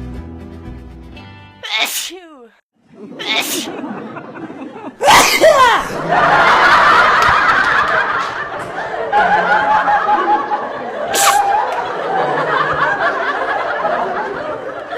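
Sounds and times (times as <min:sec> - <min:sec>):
person sneezing: 0:01.6 - 0:02.3, 0:03.2 - 0:03.7, 0:05.0 - 0:06.0, 0:11.1 - 0:11.6
people laughing and giggling: 0:02.9 - 0:14.9
brief sharp hiss: 0:11.2 - 0:11.5.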